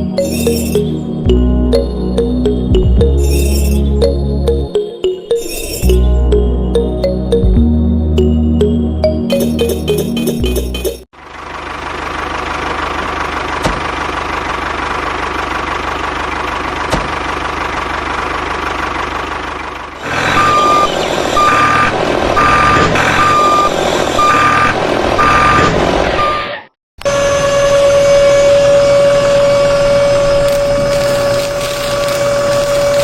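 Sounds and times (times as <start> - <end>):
reversing alarm beeping: 20.2 - 31.2.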